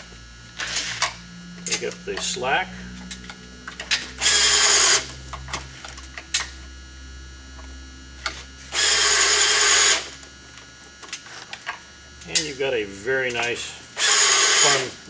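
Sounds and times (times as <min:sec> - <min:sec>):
battery drill spinning: 0:03.6 - 0:06.7, 0:08.1 - 0:15.0.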